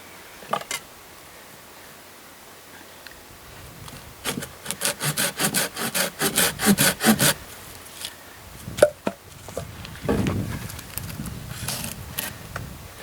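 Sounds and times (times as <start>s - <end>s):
hand saw cutting wood: 4.2s - 7.4s.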